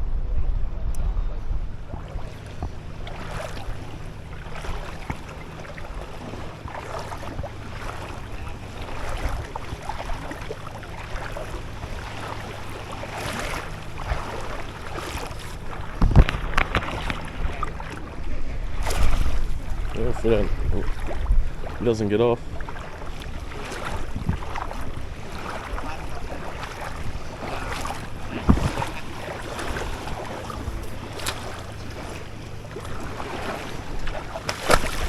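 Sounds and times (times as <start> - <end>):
wind rumbling on microphone: 0.0 - 35.0
water splashing and lapping: 0.8 - 35.0
loud thump: 28.4 - 29.0.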